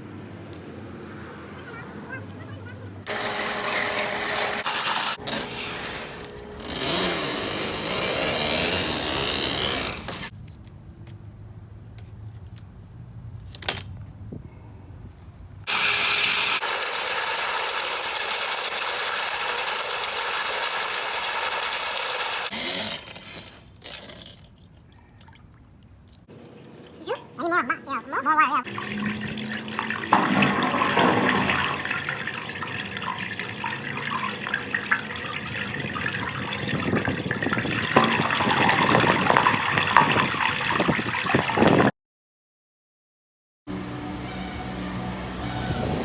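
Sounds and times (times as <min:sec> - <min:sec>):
motorized drain snake running: 0:03.0 - 0:10.3, 0:15.7 - 0:24.5, 0:26.3 - 0:40.8.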